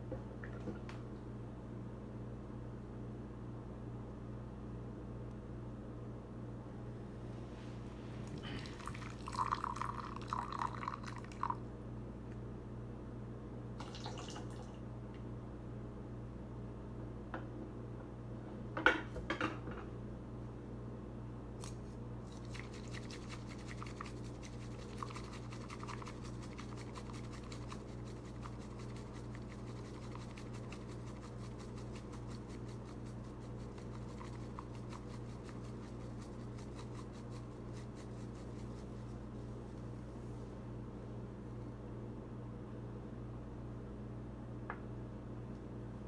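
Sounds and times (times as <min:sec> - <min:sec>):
tea whisk brushing in a bowl: 0:21.6 - 0:40.3.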